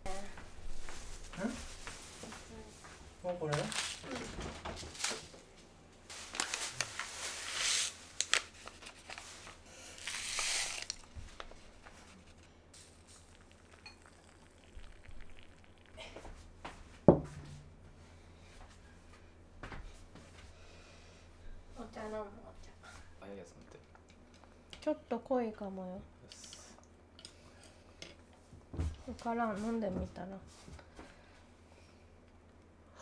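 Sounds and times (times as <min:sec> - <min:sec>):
crinkling handling noises: 0:03.3 - 0:13.4.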